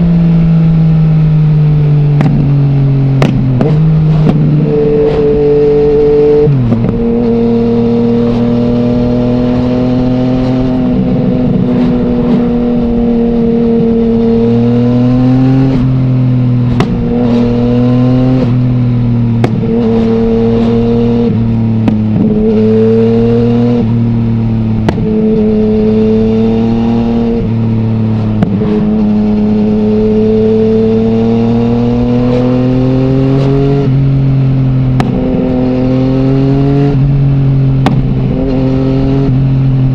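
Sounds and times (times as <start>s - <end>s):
motorcycle engine revving: 0.0s - 39.9s
exhaust cracks: 2.2s - 5.2s, 16.6s - 17.4s.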